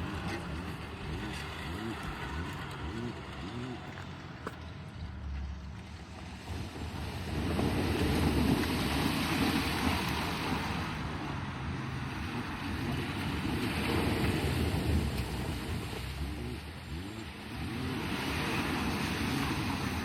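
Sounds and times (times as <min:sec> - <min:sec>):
low engine hum: 0:00.0 - 0:20.0
wind and road noise rushing: 0:00.0 - 0:20.0.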